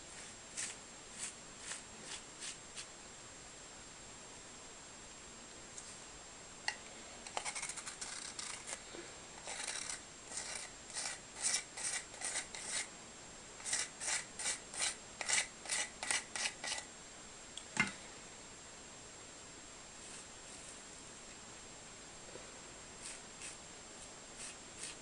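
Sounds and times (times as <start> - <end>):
hand scraping on paper: 0.1 - 2.9, 7.3 - 8.8, 9.4 - 12.9, 13.6 - 16.8, 24.4 - 25.0.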